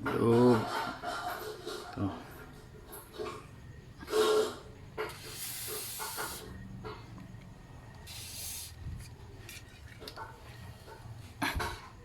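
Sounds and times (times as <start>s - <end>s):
aerosol spray hissing: 5.1s - 6.5s, 8.1s - 8.8s.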